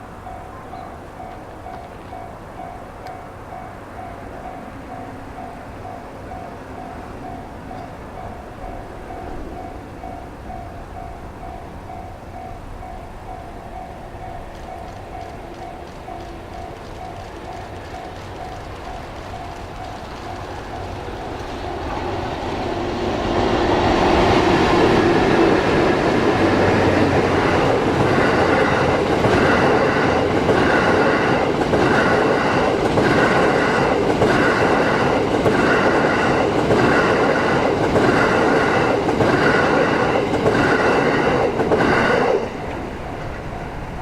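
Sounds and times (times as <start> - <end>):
train wheels clattering over rails: 13.4 - 44.0.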